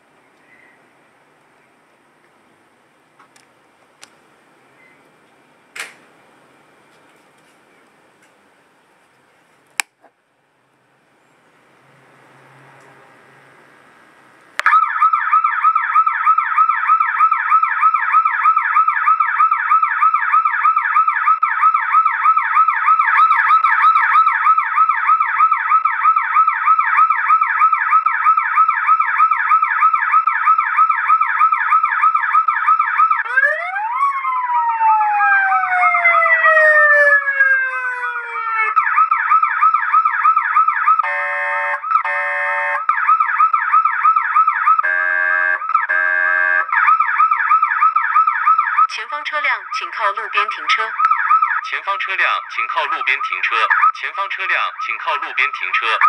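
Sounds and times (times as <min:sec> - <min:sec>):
warbling police siren: 0:14.6 - 0:56.0
buzzing horn blasts: 0:41.0 - 0:42.8, 0:44.8 - 0:46.7.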